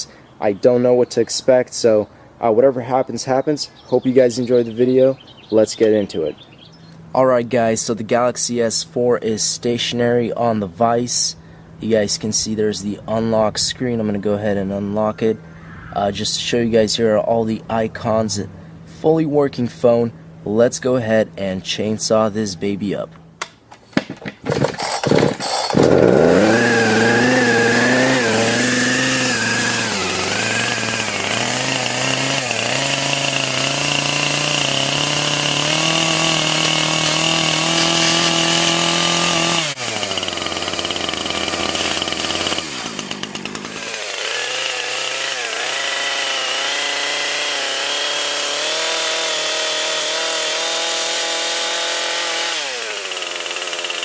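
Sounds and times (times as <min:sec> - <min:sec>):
chainsaw cutting at high revs: 0:24.4 - 0:54.0.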